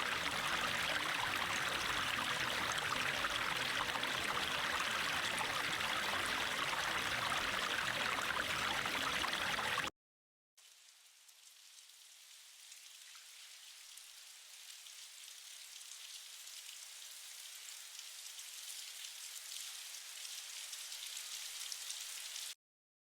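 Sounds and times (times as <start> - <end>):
rain pattering: 0.0 - 9.9.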